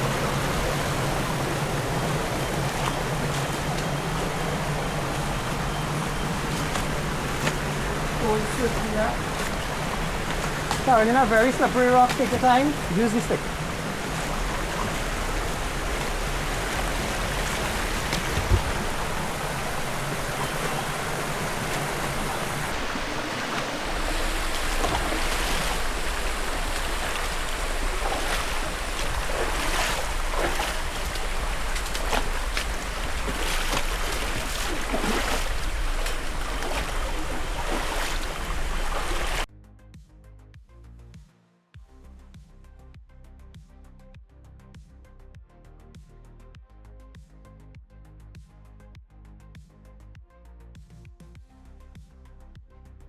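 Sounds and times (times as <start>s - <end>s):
river water rushing: 0.0s - 39.5s
short splashes: 0.0s - 39.5s.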